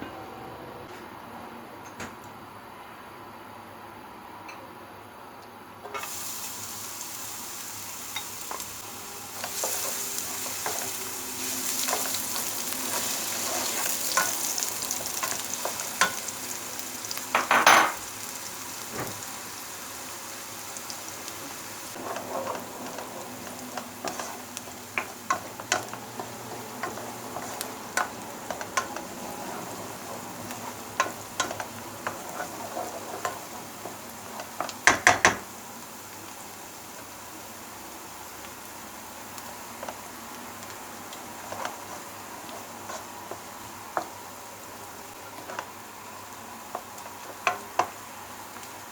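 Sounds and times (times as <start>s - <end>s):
food sizzling in a pan: 5.8s - 48.9s
utensil scraping a pan: 22.0s - 33.4s.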